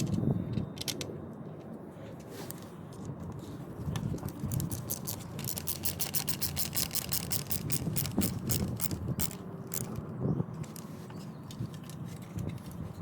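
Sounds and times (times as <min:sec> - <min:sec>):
screwdriver clicking rapidly: 0:04.0 - 0:10.0.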